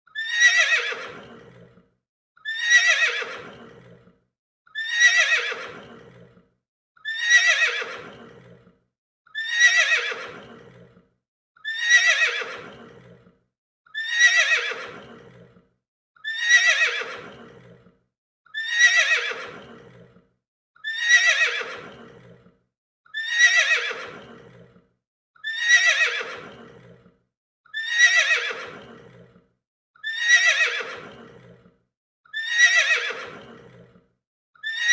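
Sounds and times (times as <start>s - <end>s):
horse neighing: 0.2s - 1.8s, 2.5s - 4.0s, 4.8s - 6.4s, 7.1s - 8.7s, 9.4s - 10.9s, 11.8s - 13.2s, 14.0s - 15.5s, 16.3s - 17.8s, 18.6s - 20.1s, 20.9s - 22.4s, 23.2s - 24.7s, 25.4s - 27.0s, 27.8s - 29.3s, 30.0s - 31.6s, 32.4s - 33.8s.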